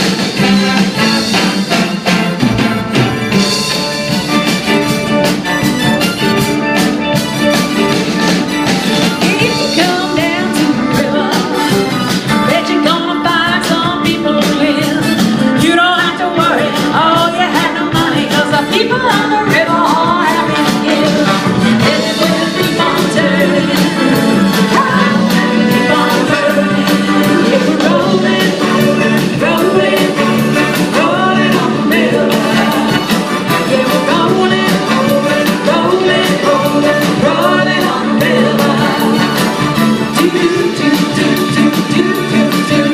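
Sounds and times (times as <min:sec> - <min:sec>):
drums steady beat: 0:00.0 - 0:42.9
live rock band playing: 0:00.0 - 0:42.9
person singing: 0:08.9 - 0:42.9.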